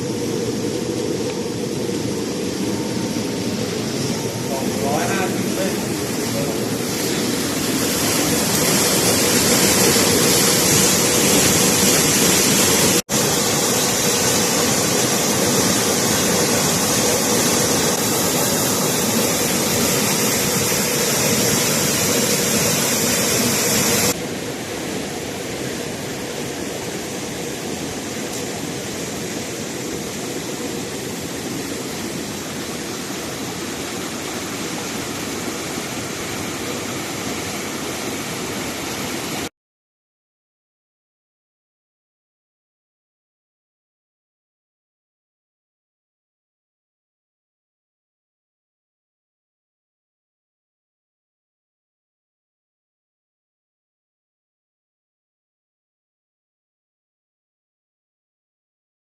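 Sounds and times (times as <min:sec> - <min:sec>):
water rushing: 0:00.0 - 0:39.5.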